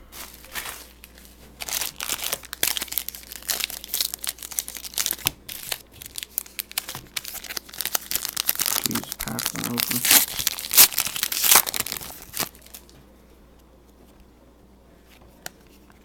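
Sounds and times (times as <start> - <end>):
card pack wrapper tearing and crinkling: 0.2 - 12.9.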